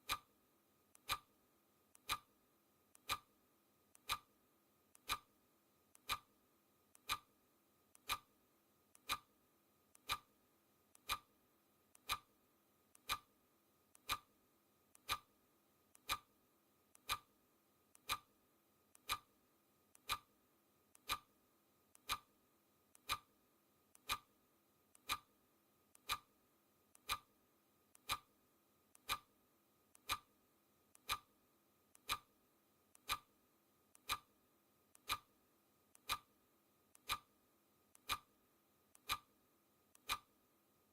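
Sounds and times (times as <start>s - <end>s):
clock ticking: 0.0s - 0.3s, 0.9s - 1.3s, 1.9s - 2.3s, 2.9s - 3.3s, 3.9s - 4.3s, 4.9s - 5.3s, 5.9s - 6.3s, 6.9s - 7.3s, 7.9s - 8.3s, 8.9s - 9.3s, 9.9s - 10.3s, 10.9s - 11.3s, 11.9s - 12.3s, 12.9s - 13.3s, 13.9s - 14.3s, 14.9s - 15.3s, 15.9s - 16.3s, 16.9s - 17.3s, 17.9s - 18.3s, 18.9s - 19.3s, 19.9s - 20.3s, 20.9s - 21.3s, 22.0s - 22.3s, 22.9s - 23.3s, 24.0s - 24.3s, 24.9s - 25.3s, 26.0s - 26.3s, 27.0s - 27.3s, 27.9s - 28.3s, 29.0s - 29.3s, 29.9s - 30.3s, 30.9s - 31.3s, 32.0s - 32.3s, 33.0s - 33.3s, 33.9s - 34.3s, 34.9s - 35.3s, 35.9s - 36.3s, 36.9s - 37.3s, 37.9s - 38.3s, 38.9s - 39.3s, 39.9s - 40.3s.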